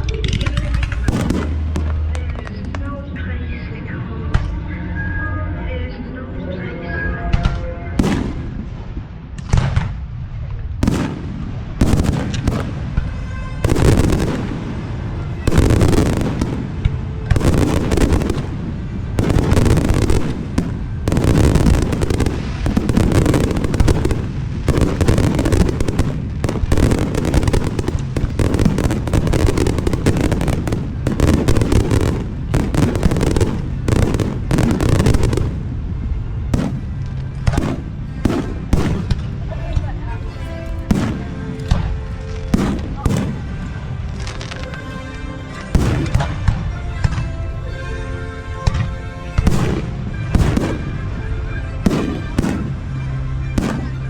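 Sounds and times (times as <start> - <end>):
fireworks crackle: 0.0 - 2.9, 8.0 - 47.3, 51.8 - 54.0
fireworks booming: 0.3 - 2.6, 7.4 - 39.9, 40.8 - 44.8, 49.4 - 51.1, 51.8 - 54.0.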